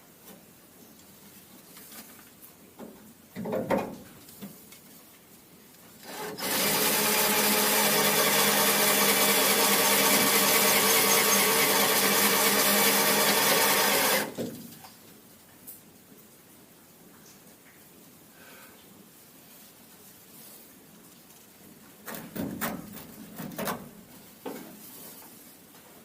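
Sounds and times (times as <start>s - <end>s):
cordless drill running: 6.0s - 14.4s.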